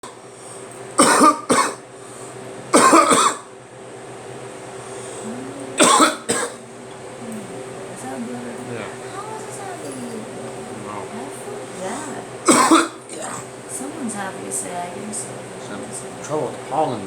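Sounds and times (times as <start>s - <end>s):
man coughing harshly: 1.0s - 1.8s, 2.7s - 3.5s, 5.8s - 6.6s, 12.4s - 13.0s.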